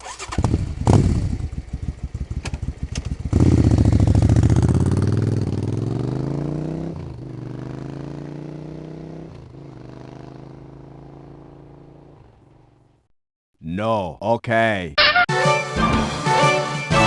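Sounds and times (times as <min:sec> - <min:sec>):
engine starting and running: 0:00.0 - 0:04.8.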